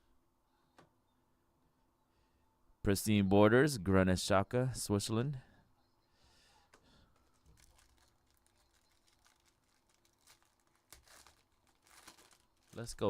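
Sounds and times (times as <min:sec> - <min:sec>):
trading cards rustling and clicking: 0:07.1 - 0:13.0.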